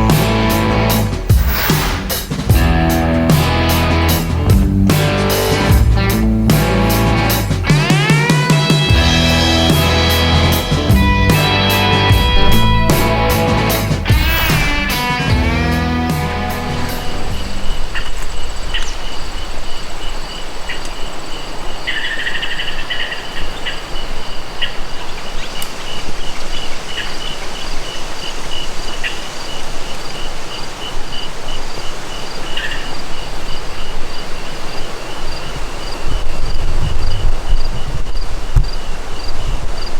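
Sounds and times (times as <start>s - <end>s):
insects chirping: 0.0s - 4.2s, 5.2s - 39.9s
rushing outdoor noise: 0.0s - 39.9s
insect chirring burst: 0.3s - 2.6s, 11.4s - 15.5s
faint steady insect trill: 16.8s - 39.9s.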